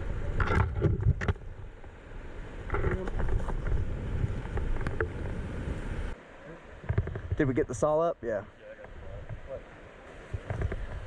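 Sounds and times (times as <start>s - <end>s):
wind buffeting microphone: 0.0s - 6.2s, 8.8s - 11.0s.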